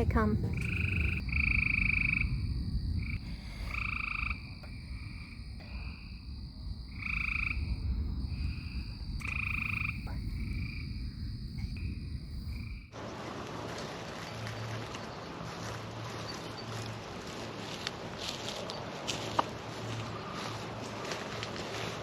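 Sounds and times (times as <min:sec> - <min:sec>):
low rumble: 0:04.3 - 0:18.7.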